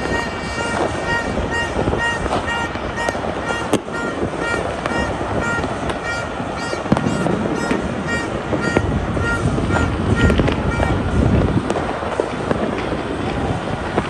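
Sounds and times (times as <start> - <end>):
short high tone beeping: 0.0 - 11.0
distant fireworks popping: 0.0 - 14.0
sharp firework bang: 0.0 - 14.0.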